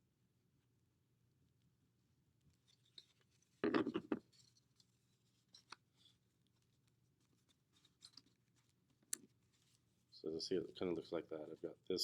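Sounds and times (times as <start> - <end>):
faint clicks and rubs: 2.4 - 10.2.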